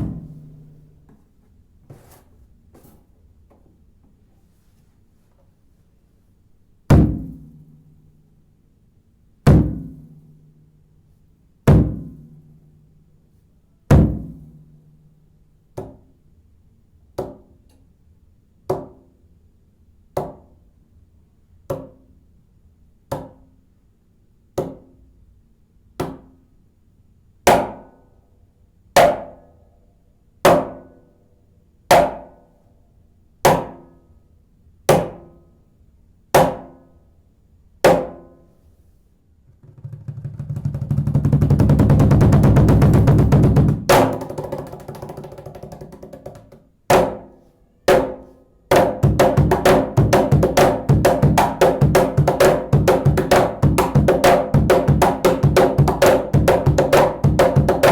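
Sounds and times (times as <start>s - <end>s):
hand drum strokes: 39.6s - 46.6s.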